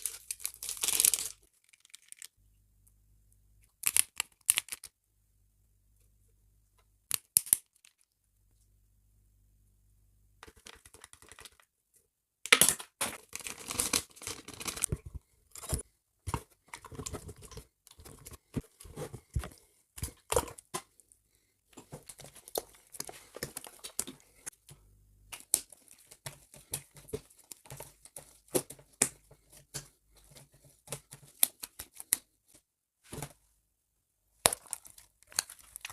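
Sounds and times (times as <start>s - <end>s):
plastic packaging tearing and crinkling: 0.0s - 2.3s, 13.2s - 15.0s, 34.5s - 35.9s.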